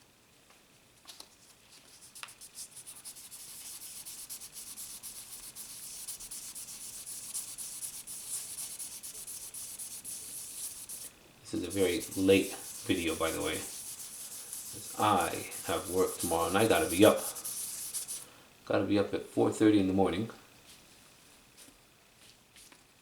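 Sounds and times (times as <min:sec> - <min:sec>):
sandpaper scratching on metal: 0:02.0 - 0:18.2.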